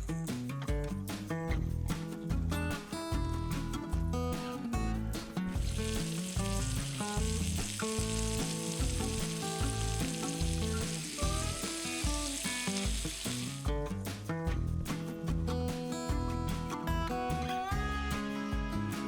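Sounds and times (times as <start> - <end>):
guitar music: 0.0 - 19.0
food sizzling in a frying pan: 5.6 - 13.7.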